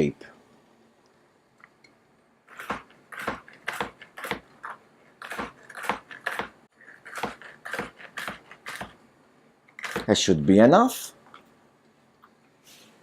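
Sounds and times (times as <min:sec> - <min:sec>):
knife slicing cucumber: 0:02.5 - 0:09.0, 0:09.8 - 0:10.2.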